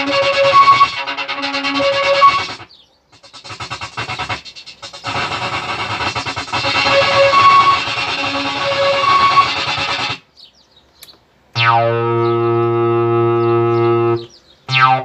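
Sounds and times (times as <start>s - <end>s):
low synthesizer note: 0.0s - 2.6s, 5.0s - 10.2s, 11.6s - 15.0s
distorted synthesizer buzzing: 0.0s - 10.2s, 11.6s - 15.0s.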